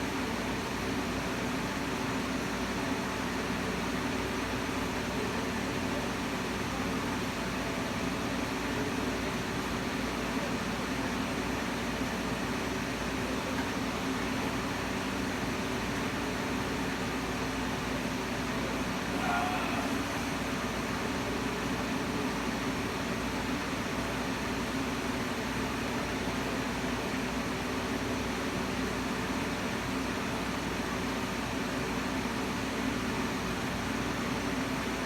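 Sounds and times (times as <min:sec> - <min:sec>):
fan humming and hissing: 0:13.5 - 0:31.7.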